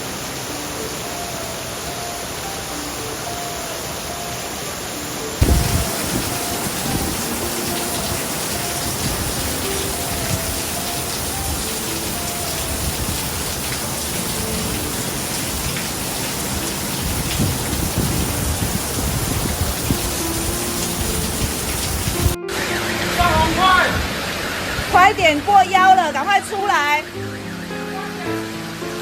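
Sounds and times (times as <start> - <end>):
heavy rain pouring: 0.0 - 29.0
low rumbles: 5.4 - 8.4.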